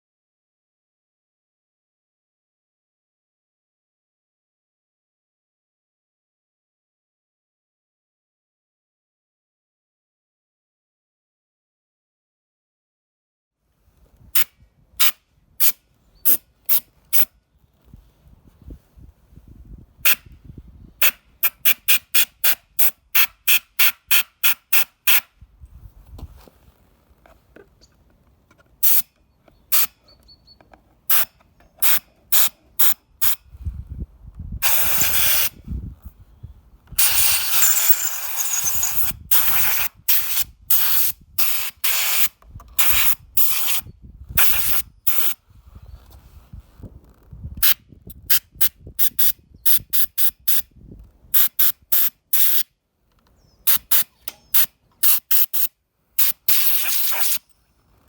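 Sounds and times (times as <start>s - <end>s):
compressed air hissing bursts: 21.0s - 25.3s, 31.1s - 33.4s, 34.6s - 35.6s, 37.0s - 45.4s, 51.4s - 52.6s, 53.7s - 57.4s.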